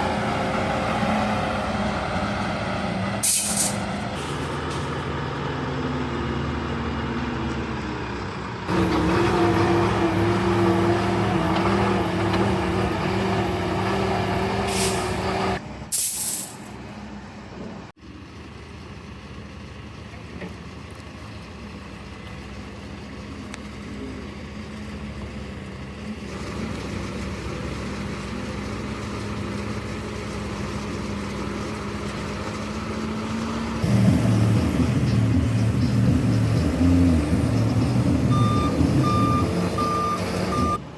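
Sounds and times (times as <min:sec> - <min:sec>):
diesel truck engine running: 0:00.0 - 0:15.9, 0:16.7 - 0:40.9
air brake hisses: 0:03.2 - 0:04.9, 0:14.7 - 0:15.2, 0:15.9 - 0:16.7.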